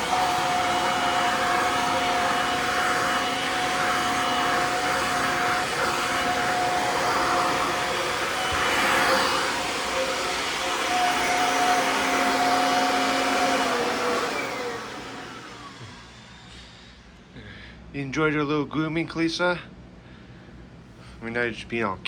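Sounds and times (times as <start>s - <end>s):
vacuum motor winding down: 0.0s - 16.5s
vacuum cleaner running: 0.0s - 17.2s.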